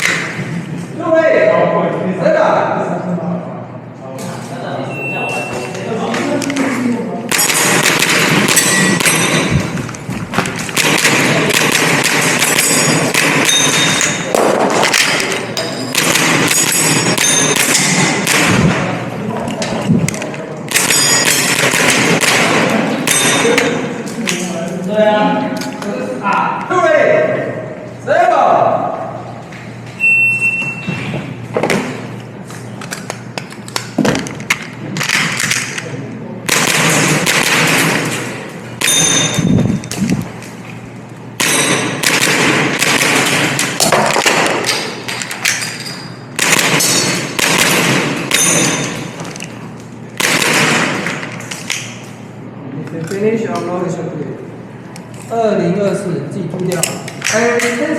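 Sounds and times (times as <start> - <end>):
shot timer beep: 4.9 - 5.8, 30.0 - 31.1
airsoft pistol firing: 7.3 - 9.3, 10.7 - 18.9, 20.7 - 23.3, 36.5 - 38.1, 41.4 - 44.9, 46.4 - 48.7, 50.2 - 51.2.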